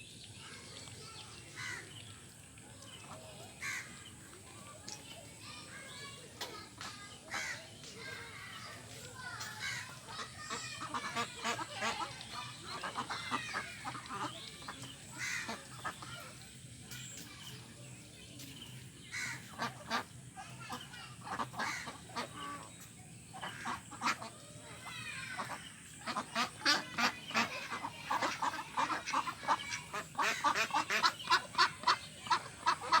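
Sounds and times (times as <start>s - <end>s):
ducks quacking: 7.2s - 16.3s, 19.1s - 22.7s, 23.3s - 33.0s.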